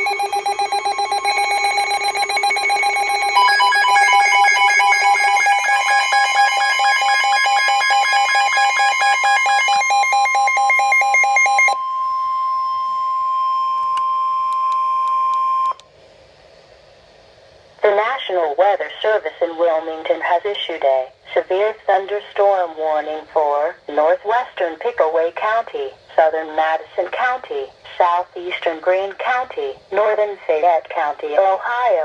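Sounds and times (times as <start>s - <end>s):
rapidly pulsing electronic alarm: 0.0s - 15.7s
steady warning alarm tone: 0.0s - 15.8s.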